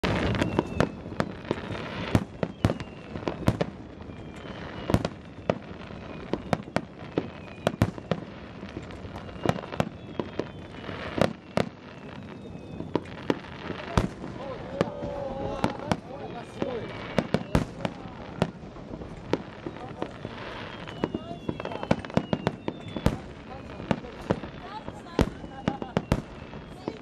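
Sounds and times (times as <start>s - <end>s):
distant fireworks rumble: 0.0s - 27.0s
fireworks bangs and cracks: 0.0s - 27.0s.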